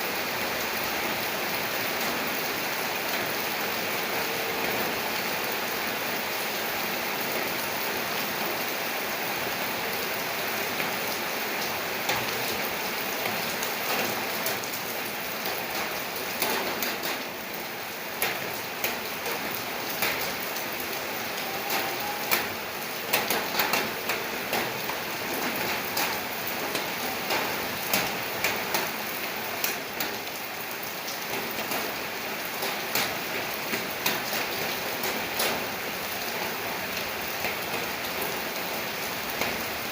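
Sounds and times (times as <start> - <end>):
steady rain hiss: 0.0 - 39.9.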